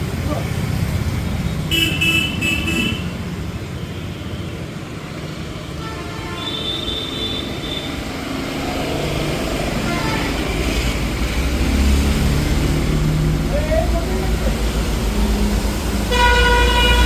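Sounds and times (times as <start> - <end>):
road traffic rumbling: 0.0 - 17.0
vehicle horn beeping: 1.7 - 3.2, 5.8 - 8.0, 16.1 - 17.0.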